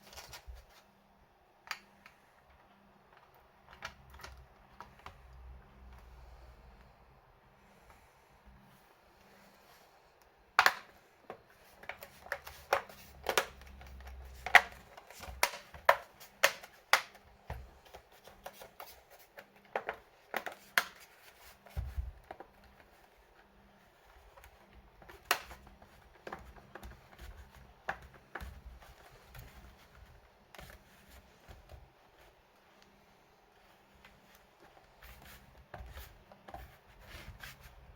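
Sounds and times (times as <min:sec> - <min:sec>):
laptop parts clicking and tapping: 0:01.6 - 0:06.1, 0:10.5 - 0:23.2, 0:24.0 - 0:33.0.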